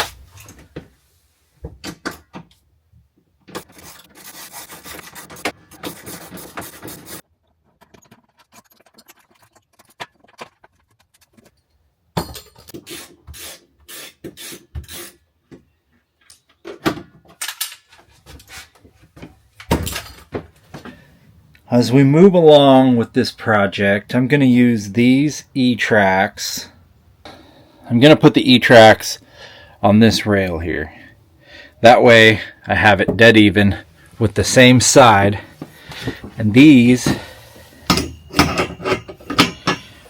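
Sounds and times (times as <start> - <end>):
hand tool scraping: 36.0 - 40.0.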